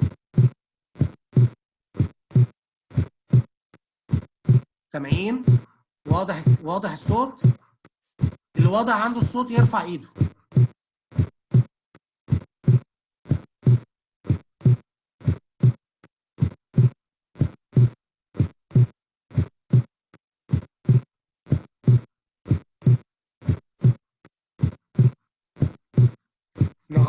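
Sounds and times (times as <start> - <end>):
heartbeat lub-dub: 0.4 - 3.5, 4.1 - 7.6, 24.6 - 27.0.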